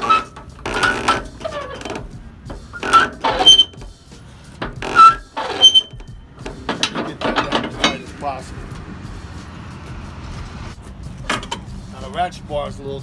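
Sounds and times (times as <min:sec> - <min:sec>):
winch clanking and ratcheting: 0:00.0 - 0:08.4, 0:11.2 - 0:11.8.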